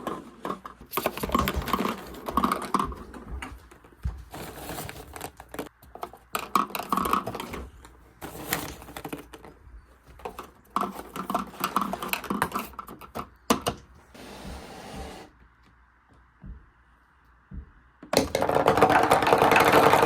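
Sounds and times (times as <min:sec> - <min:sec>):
marbles rolling and clattering: 0:18.2 - 0:20.0.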